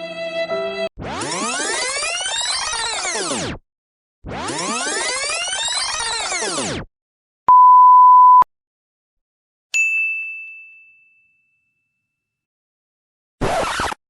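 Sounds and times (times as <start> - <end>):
steady electronic beep: 7.5 - 8.4
bright ding: 9.8 - 12.0.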